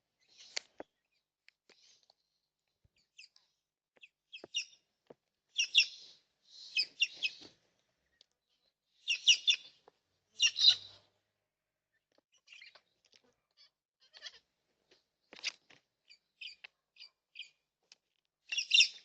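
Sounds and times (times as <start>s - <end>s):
birds chirping and screeching: 5.6s - 7.5s, 9.0s - 9.8s, 10.4s - 11.0s, 12.4s - 12.9s, 18.5s - 19.0s.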